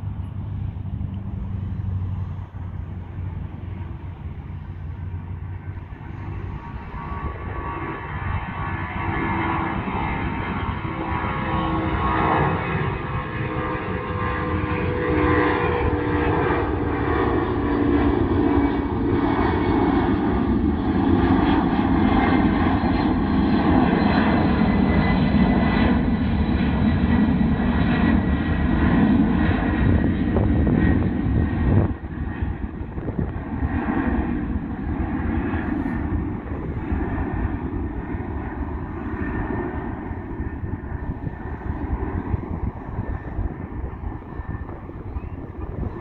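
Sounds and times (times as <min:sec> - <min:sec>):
jet engines roaring: 0:00.0 - 0:46.0.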